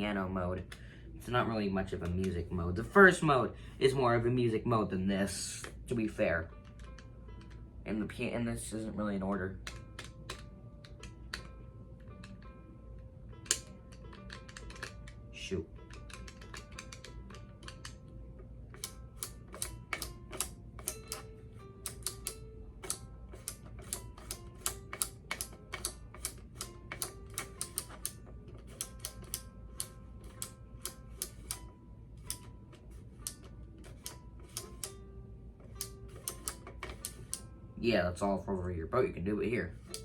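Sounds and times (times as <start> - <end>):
toy piano electronic notes: 9.6 - 37.5.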